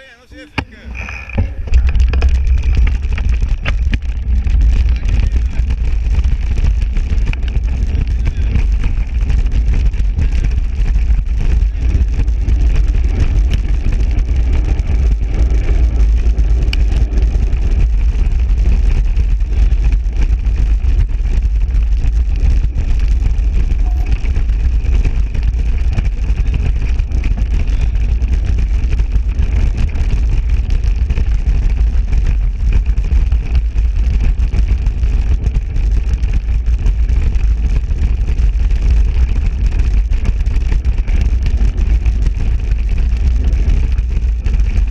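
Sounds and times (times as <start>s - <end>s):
bike tyres on dirt track: 0.0s - 44.9s
wind buffeting microphone: 0.4s - 44.9s.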